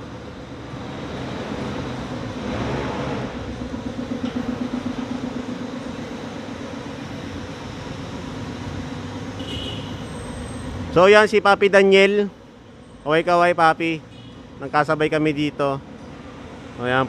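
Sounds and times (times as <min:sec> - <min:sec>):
car engine idling: 0:00.0 - 0:13.3.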